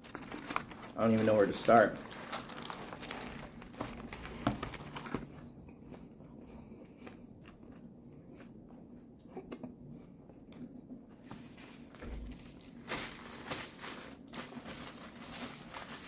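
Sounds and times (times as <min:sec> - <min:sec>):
person chewing crunchy food: 0:02.0 - 0:12.3.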